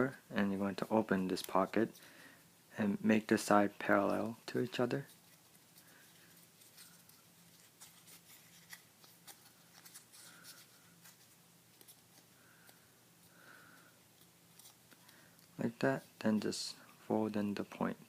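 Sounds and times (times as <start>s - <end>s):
low room hum: 0.0s - 18.0s
paper crackling being folded: 4.0s - 12.8s, 14.2s - 14.9s.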